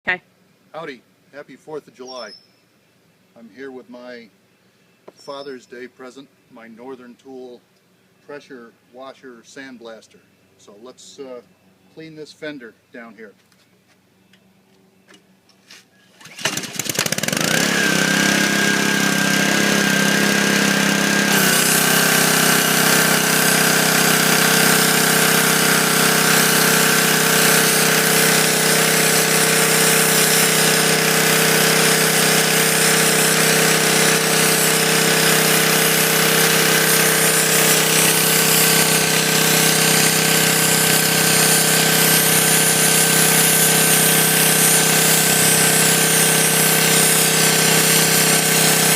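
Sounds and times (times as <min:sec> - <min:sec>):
pressure washer running: 0:16.2 - 0:48.9.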